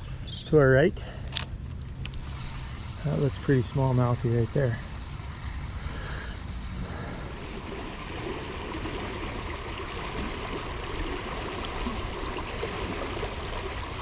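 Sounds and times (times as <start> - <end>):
creek water rushing over rocks: 4.8 - 14.0.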